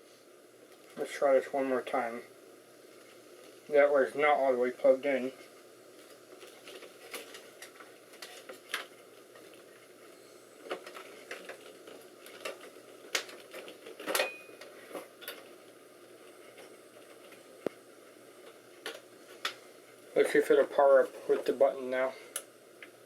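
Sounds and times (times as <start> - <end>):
clicks and knocks of computer parts: 6.4 - 9.6, 10.6 - 15.5.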